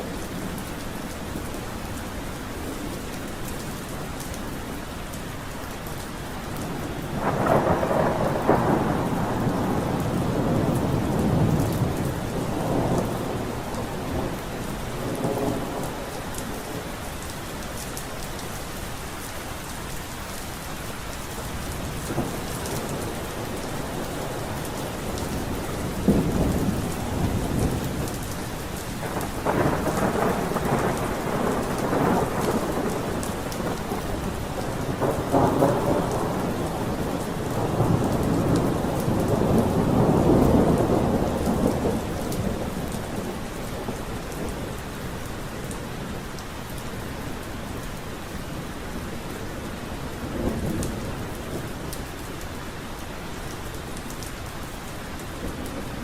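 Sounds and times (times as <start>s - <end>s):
steady rain falling: 0.0s - 56.0s
rolling thunder: 7.1s - 16.9s, 21.8s - 46.3s.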